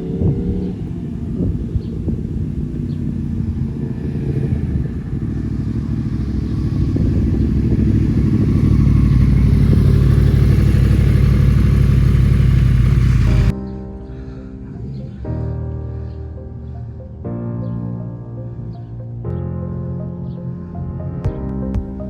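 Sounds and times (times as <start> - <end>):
motorcycle engine running: 0.0 - 13.5.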